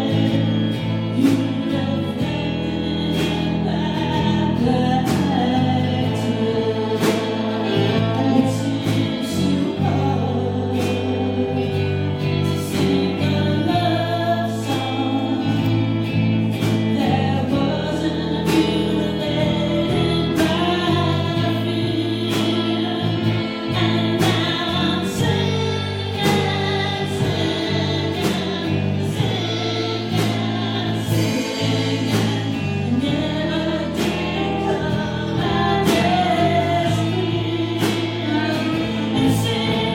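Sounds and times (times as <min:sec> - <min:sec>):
band playing a song: 0:00.0 - 0:39.9
person singing: 0:00.0 - 0:39.9.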